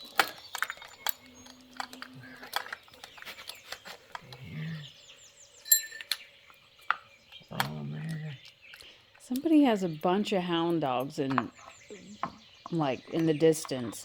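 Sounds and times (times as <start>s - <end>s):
metallic clicks and clinks: 0.0s - 4.5s, 5.7s - 6.2s
bird chirping: 0.0s - 14.0s.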